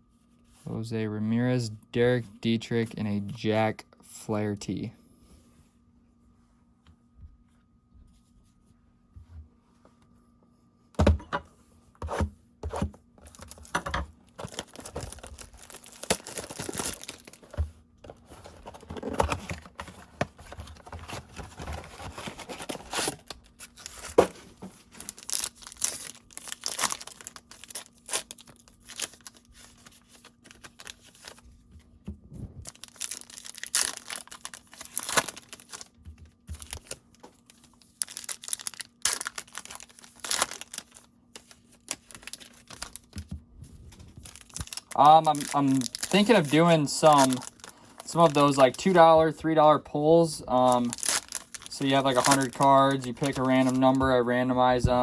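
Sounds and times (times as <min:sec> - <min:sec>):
foil wrappers tearing and crinkling: 0:13.3 - 0:31.4, 0:32.6 - 0:43.2, 0:44.0 - 0:49.2, 0:50.6 - 0:54.8.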